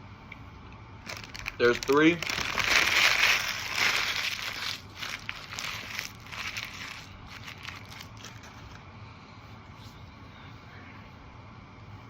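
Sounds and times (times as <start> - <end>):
paper wrapper crinkling: 1.0 - 8.8.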